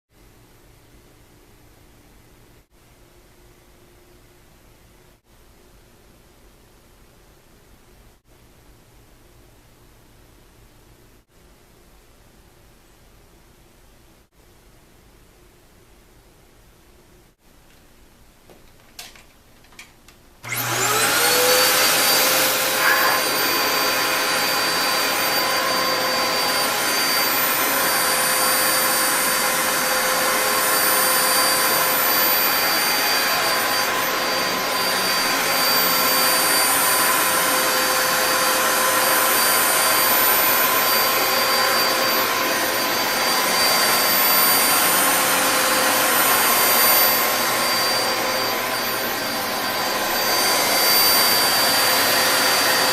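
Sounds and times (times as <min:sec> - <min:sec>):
vacuum cleaner whining: 0:20.4 - 0:52.9.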